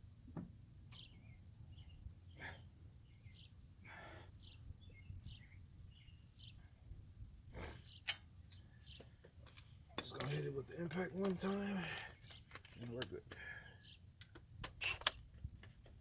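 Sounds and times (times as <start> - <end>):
faint bird chirps: 0.9 - 6.8.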